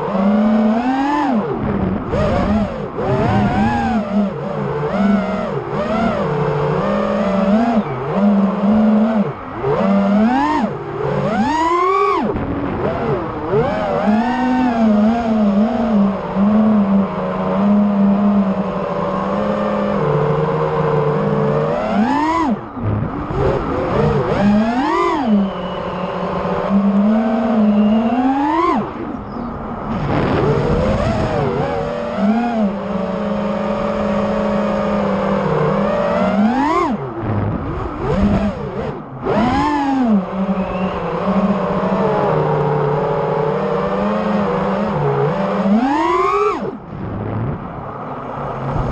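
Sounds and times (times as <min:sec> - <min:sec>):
racing drone motors whining: 0:00.0 - 0:48.9.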